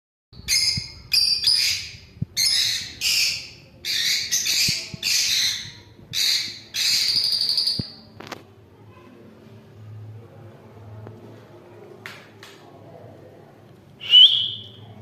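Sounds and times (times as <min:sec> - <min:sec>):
lovebirds calling harshly: 0:00.5 - 0:08.0.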